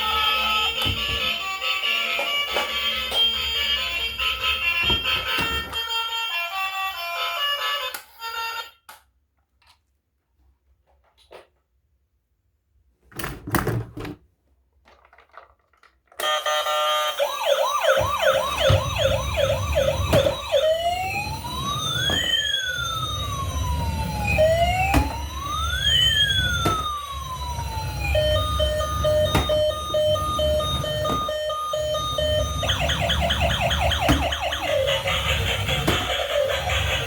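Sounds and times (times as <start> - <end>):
toy electronic siren: 0.0 - 8.8, 16.2 - 37.0
rapid electronic beeping: 28.2 - 37.0.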